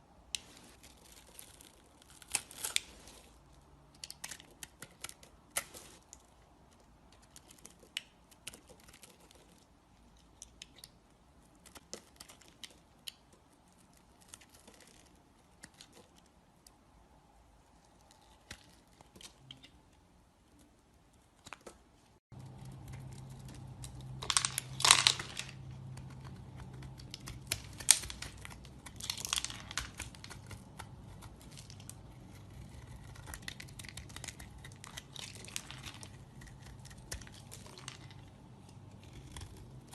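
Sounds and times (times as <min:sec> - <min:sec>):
steady low hum: 0:22.3 - 0:39.9
knife carving soap: 0:25.6 - 0:39.9.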